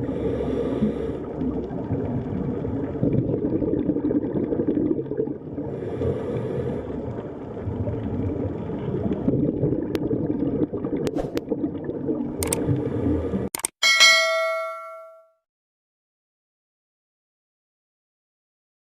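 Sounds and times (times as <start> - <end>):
underwater bubbling and gurgling: 0.0 - 13.5
bright bell-like ring: 13.8 - 15.4.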